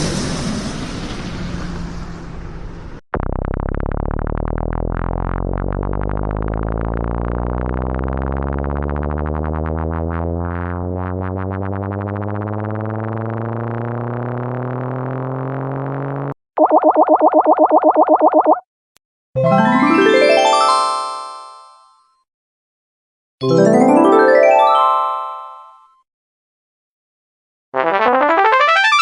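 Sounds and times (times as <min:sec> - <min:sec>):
aircraft landing: 0:00.0 - 0:03.0
electronic game car engine: 0:00.0 - 0:18.6.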